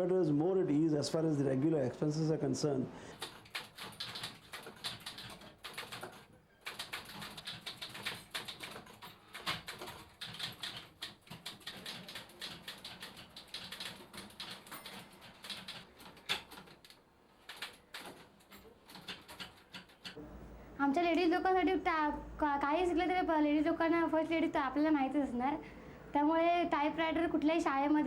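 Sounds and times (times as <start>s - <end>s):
manual typewriter key clacks: 3.2s - 20.2s.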